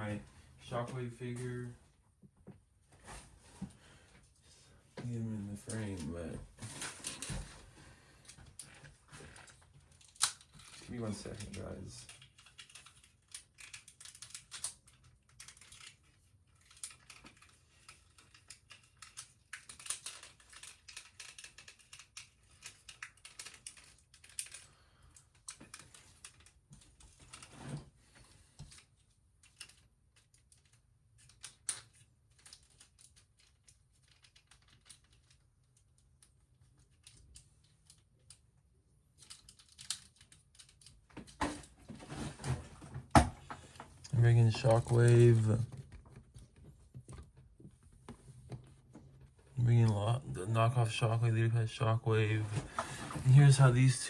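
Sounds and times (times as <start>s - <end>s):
plastic pieces clicking: 9.5s - 27.4s, 39.1s - 41.4s.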